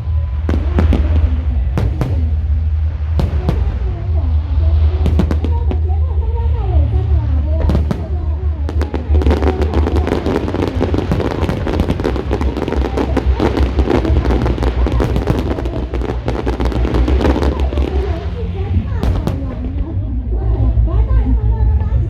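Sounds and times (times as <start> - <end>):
fireworks cracking and popping: 0.0 - 4.3, 5.0 - 5.9, 7.6 - 19.8
low rumble: 0.0 - 22.0.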